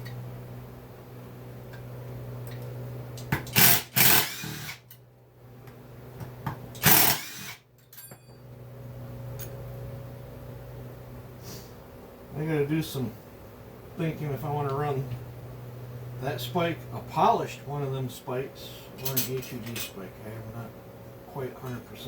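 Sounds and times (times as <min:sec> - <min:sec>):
steady low hum: 0:00.0 - 0:22.0
power driver whirring: 0:03.5 - 0:04.8, 0:06.8 - 0:07.6.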